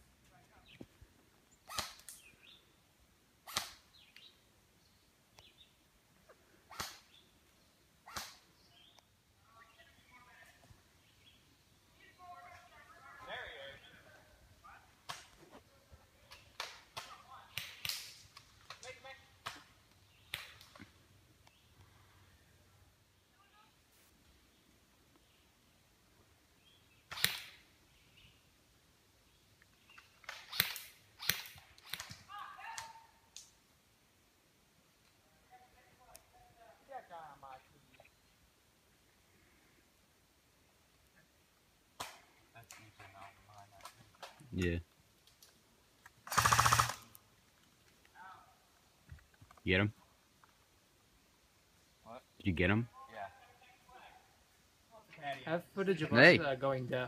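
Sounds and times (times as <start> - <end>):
airsoft gun shots: 46.3 - 47.0.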